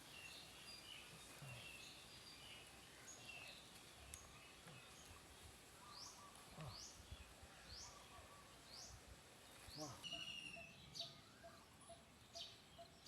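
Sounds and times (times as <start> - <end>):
faint outdoor ambience: 0.0 - 13.0
faint click: 3.8 - 4.8.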